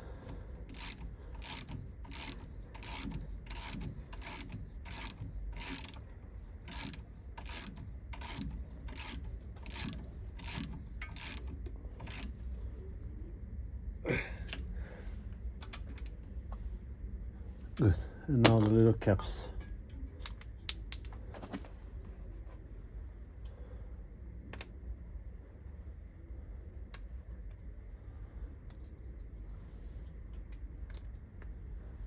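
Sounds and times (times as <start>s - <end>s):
ratchet wrench clicking: 0.7s - 6.0s, 6.7s - 12.4s.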